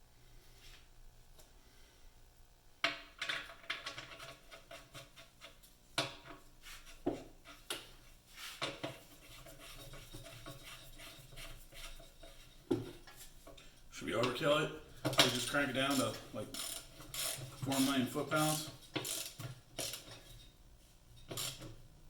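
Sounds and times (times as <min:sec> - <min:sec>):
metal tools clinking and scraping: 0:15.0 - 0:20.5.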